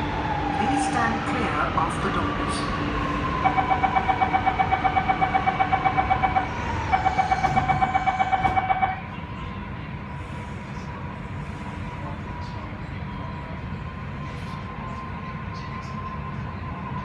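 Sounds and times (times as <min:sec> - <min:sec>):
train hum: 0:00.0 - 0:17.0
rapid door warning beeps: 0:03.5 - 0:09.0.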